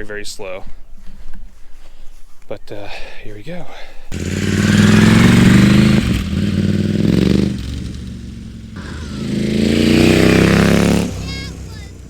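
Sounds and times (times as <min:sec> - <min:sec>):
motorcycle engine revving: 0:04.1 - 0:12.0.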